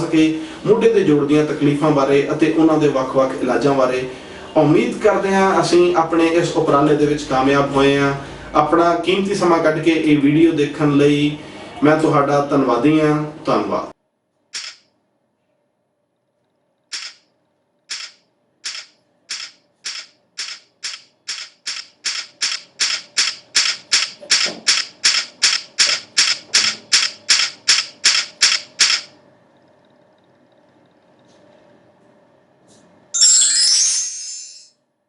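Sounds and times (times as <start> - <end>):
sharp clicks: 14.6 - 14.9, 16.9 - 17.3, 17.9 - 29.1
faint steady hum: 29.1 - 33.1.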